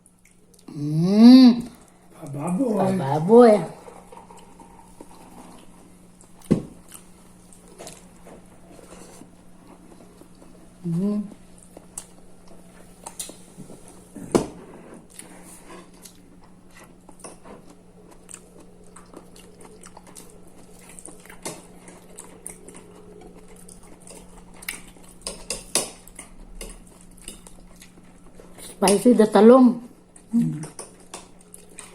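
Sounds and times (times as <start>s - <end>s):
faint steady hum: 0.0s - 31.9s
chewing and mouth noises: 3.8s - 13.9s, 15.0s - 29.0s, 30.1s - 31.9s.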